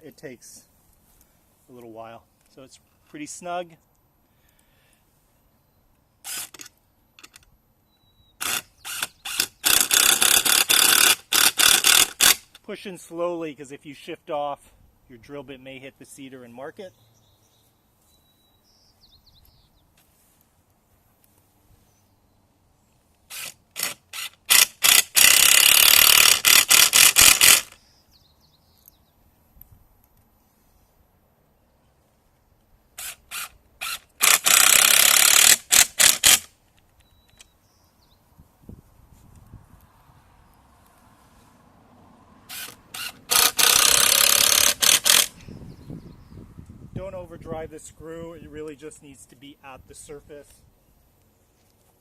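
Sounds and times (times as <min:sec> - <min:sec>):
cordless drill driving screw: 0:06.2 - 0:07.4, 0:08.4 - 0:12.5, 0:23.3 - 0:27.8, 0:33.0 - 0:36.5, 0:42.5 - 0:45.4.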